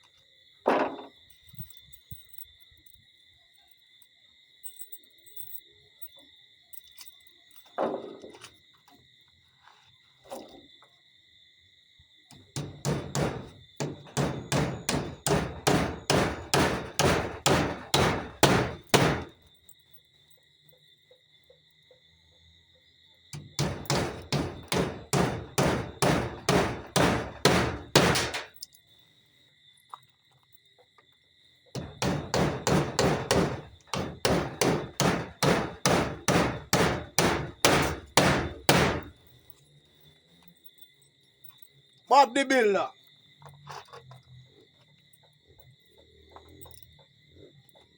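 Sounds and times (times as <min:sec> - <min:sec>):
crickets chirping: 0:00.0 - 0:47.9
hammer driving nails: 0:12.3 - 0:19.3, 0:23.4 - 0:28.6, 0:31.8 - 0:39.2.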